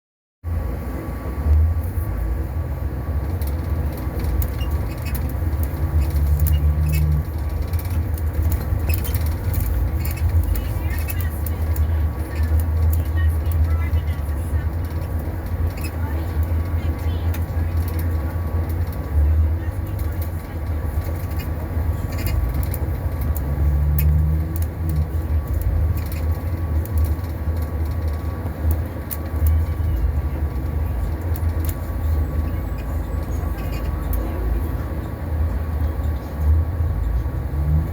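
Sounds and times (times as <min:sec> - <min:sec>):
bus engine rumble: 0:00.4 - 0:37.9
light clicks and rattles: 0:03.2 - 0:37.6.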